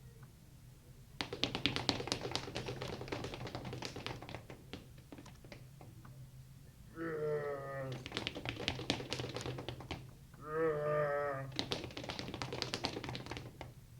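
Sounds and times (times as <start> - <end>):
rapid small taps and clicks: 1.2 - 6.2, 7.9 - 10.2, 11.5 - 13.8.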